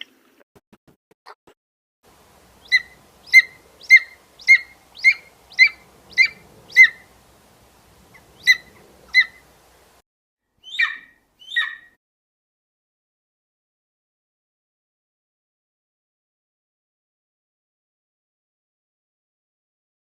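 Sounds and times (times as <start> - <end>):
animal chirping calls: 2.5 - 7.3, 8.1 - 9.5, 10.6 - 12.0.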